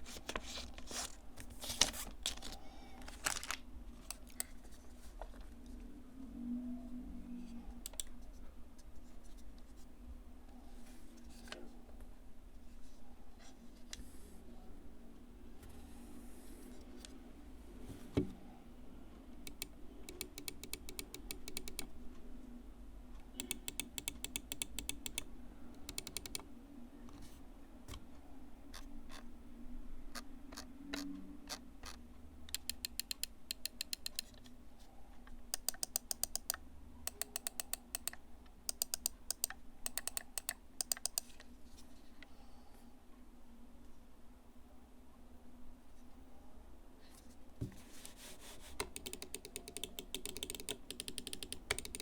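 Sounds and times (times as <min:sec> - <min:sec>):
faint steady hum: 0:00.0 - 0:52.0
mouse clicking rapid ticks: 0:07.9 - 0:08.1, 0:19.5 - 0:21.9, 0:23.4 - 0:26.4, 0:32.6 - 0:34.3, 0:35.6 - 0:41.3, 0:48.8 - 0:52.0.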